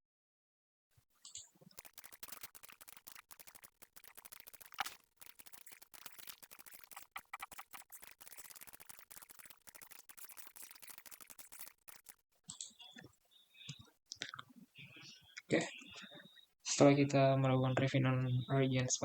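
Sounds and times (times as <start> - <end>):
computer mouse clicking: 1.3 - 12.6.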